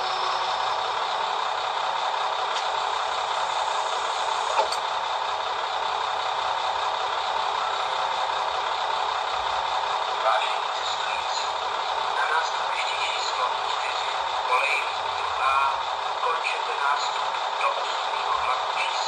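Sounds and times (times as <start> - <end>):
model railcar engine sound: 0.0 - 19.0.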